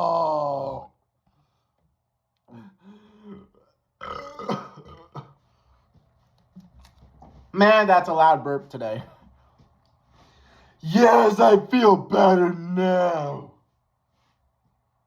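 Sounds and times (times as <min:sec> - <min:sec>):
man burping: 0:02.5 - 0:05.3.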